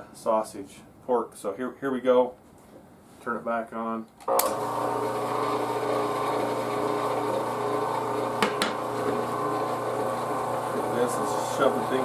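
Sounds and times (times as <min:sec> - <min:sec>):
meat grinder motor humming: 0:04.3 - 0:12.0.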